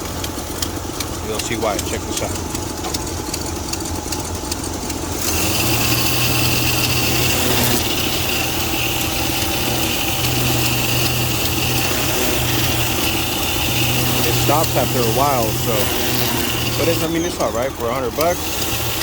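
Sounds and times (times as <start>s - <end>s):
pressure washer motor hum: 0.0s - 19.0s
water spray hissing: 5.1s - 19.0s.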